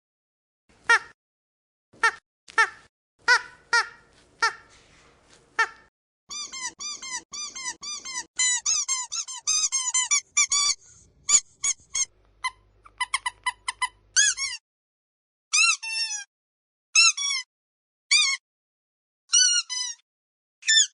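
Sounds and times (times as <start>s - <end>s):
squeaky dog toy squeaking: 5.6s - 14.6s, 15.5s - 16.3s, 17.0s - 17.5s, 18.1s - 18.4s, 19.3s - 20.0s, 20.6s - 20.9s.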